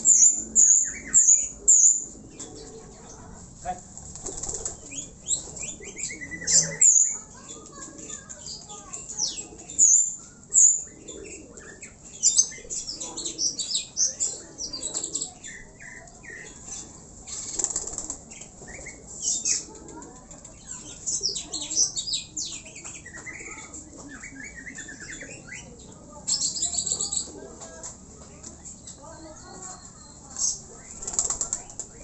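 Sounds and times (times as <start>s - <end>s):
pigeon wings flapping: 3.9s - 4.9s, 17.4s - 18.2s, 31.0s - 32.0s.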